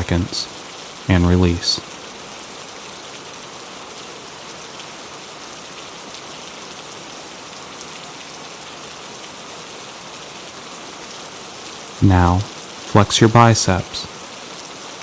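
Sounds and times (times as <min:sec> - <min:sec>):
gentle rain patter: 0:00.0 - 0:15.0.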